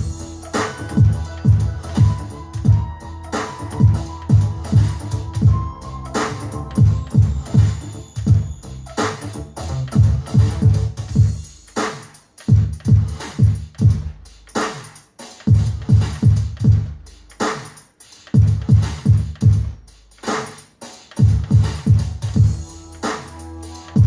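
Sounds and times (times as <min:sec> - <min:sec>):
electronic dance music: 0:00.0 - 0:12.0, 0:21.2 - 0:24.0
dj scratch effects: 0:00.0 - 0:24.0
deep bass kicks: 0:03.8 - 0:08.5.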